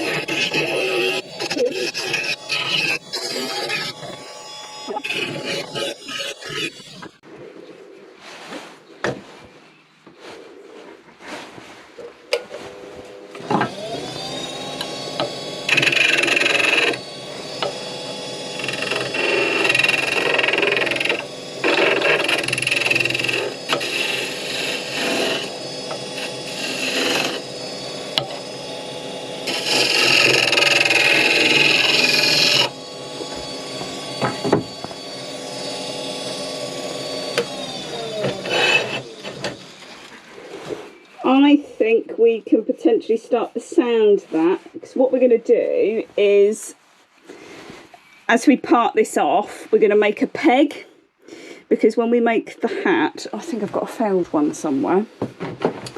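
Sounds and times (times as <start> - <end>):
chisel scraping spinning wood: 0.0 - 7.2, 12.5 - 41.5
wood lathe running: 0.0 - 7.2, 12.7 - 41.5.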